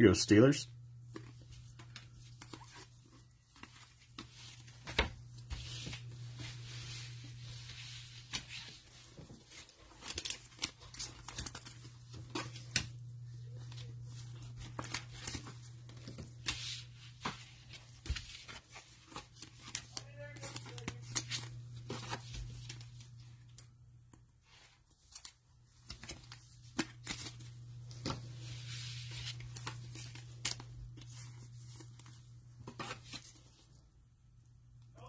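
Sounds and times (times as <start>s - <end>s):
cellophane crinkling and tearing: 7.2s - 17.0s, 29.0s - 33.4s.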